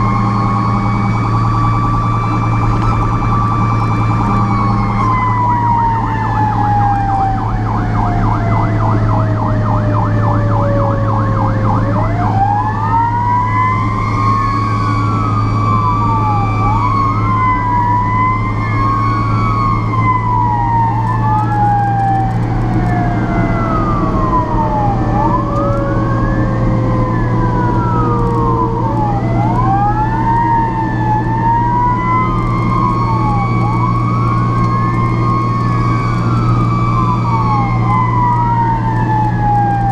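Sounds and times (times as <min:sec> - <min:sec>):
fire truck siren wailing: 0:00.0 - 0:39.9
second siren tone: 0:00.0 - 0:39.9
truck engine drone: 0:00.0 - 0:39.9.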